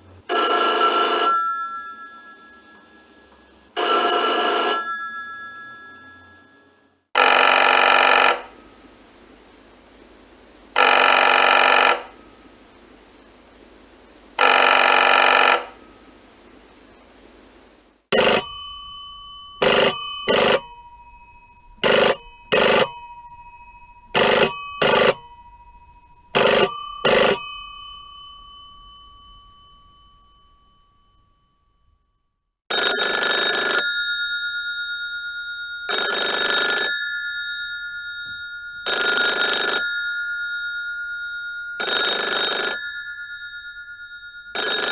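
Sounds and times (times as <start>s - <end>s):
bell telephone ring: 0.3s - 8.6s, 10.8s - 12.2s, 14.4s - 15.8s, 18.1s - 31.8s, 32.7s - 44.9s
buzzy telephone ring: 0.3s - 8.7s, 10.8s - 12.2s, 14.4s - 16.0s, 18.1s - 31.7s, 32.7s - 44.9s
bell-like telephone strikes: 18.2s - 31.6s, 32.7s - 44.9s.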